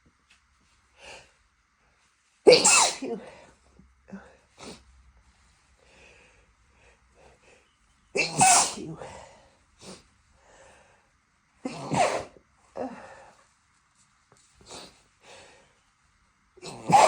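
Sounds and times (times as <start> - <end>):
person sneezing: 2.5 - 3.5, 8.2 - 10.1, 11.6 - 13.2, 16.6 - 17.0.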